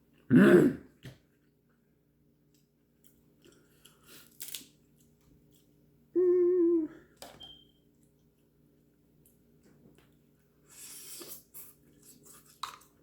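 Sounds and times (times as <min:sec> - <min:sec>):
person humming mmm: 0:06.2 - 0:07.1.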